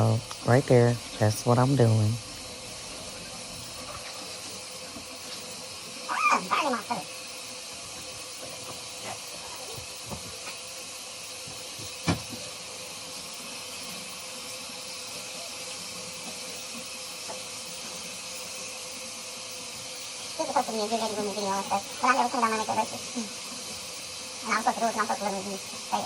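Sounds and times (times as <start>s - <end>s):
tap water running: 0.0s - 26.0s.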